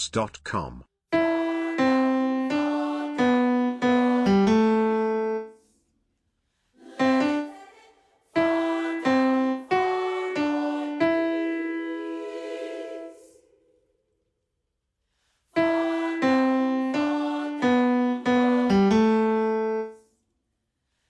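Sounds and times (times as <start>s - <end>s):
piano playing slow melody: 1.3s - 5.6s, 15.6s - 20.0s.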